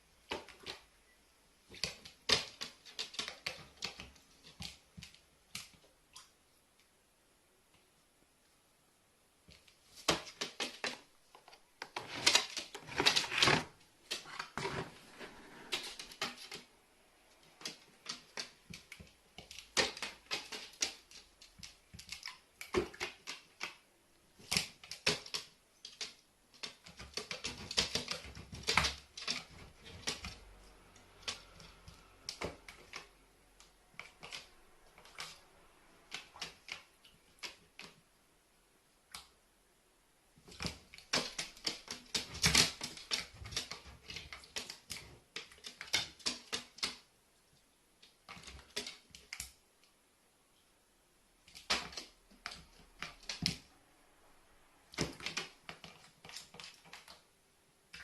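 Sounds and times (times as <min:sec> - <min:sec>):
rapid clicks and taps: 0:24.4 - 0:30.4, 0:40.5 - 0:47.1.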